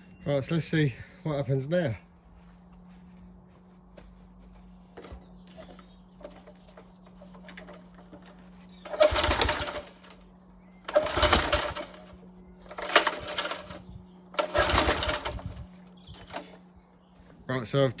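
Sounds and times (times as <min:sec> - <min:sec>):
mower engine turning over: 0:04.9 - 0:16.7
tugs on recoil starter: 0:04.9 - 0:17.4.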